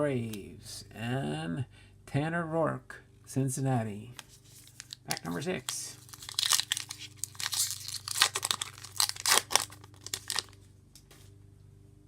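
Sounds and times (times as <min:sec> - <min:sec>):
card pack wrapper tearing: 0:04.5 - 0:10.6.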